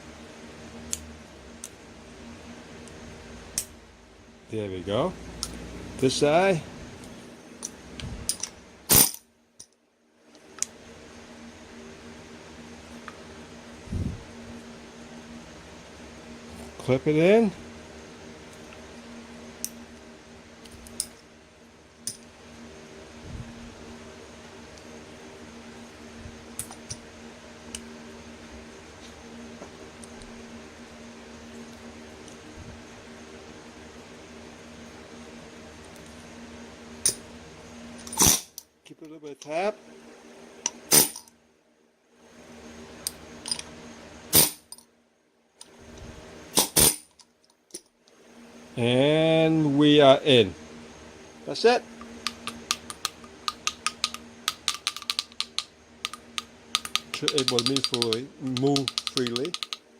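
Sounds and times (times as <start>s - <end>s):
steady hum: 0.0s - 59.9s
sharp metal clicks: 52.2s - 59.9s
hammer strikes on metal: 56.8s - 59.8s.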